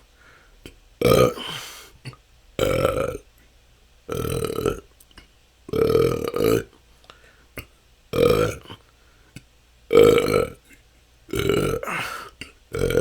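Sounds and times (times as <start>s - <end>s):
person burping: 1.0s - 3.2s, 4.1s - 4.8s, 5.7s - 6.7s, 8.1s - 8.8s, 9.9s - 10.6s, 11.3s - 13.0s.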